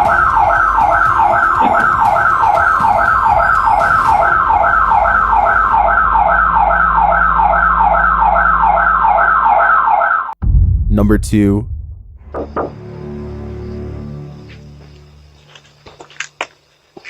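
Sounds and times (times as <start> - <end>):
security alarm siren: 0.0 - 10.4.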